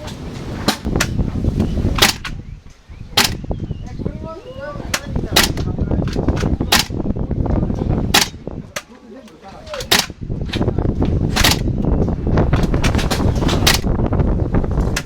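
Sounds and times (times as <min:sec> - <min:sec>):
wind rumbling on microphone: 0:00.0 - 0:15.0
airsoft rifle shots: 0:02.0 - 0:02.4, 0:03.2 - 0:03.5, 0:05.0 - 0:05.7, 0:06.4 - 0:07.0, 0:08.1 - 0:08.9, 0:09.8 - 0:10.2, 0:11.3 - 0:11.8.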